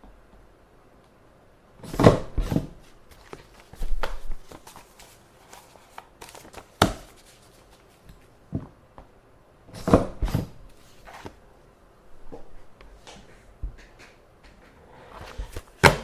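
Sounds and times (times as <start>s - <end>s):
paper rustling: 2.8s - 8.3s, 10.8s - 11.4s.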